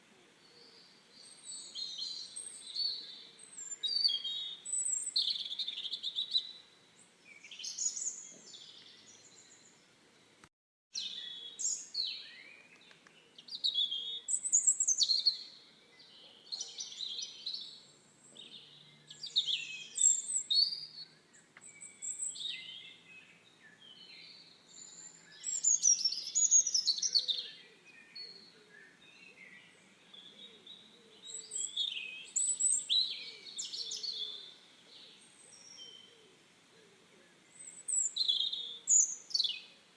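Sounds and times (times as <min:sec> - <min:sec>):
songbirds chirping and singing: 0:00.0 - 0:39.9.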